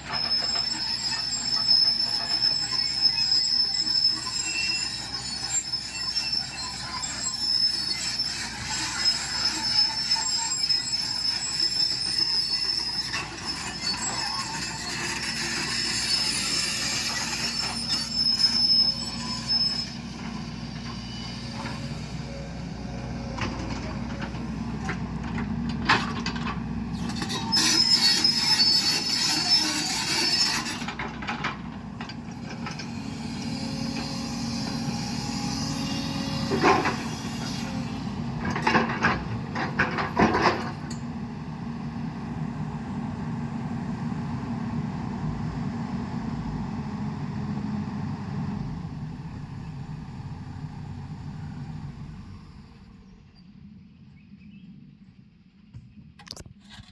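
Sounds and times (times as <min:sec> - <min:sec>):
high metallic squeals: 0:00.0 - 0:24.3, 0:26.9 - 0:31.0, 0:32.3 - 0:40.7
excavator diesel engine running: 0:00.0 - 0:54.3.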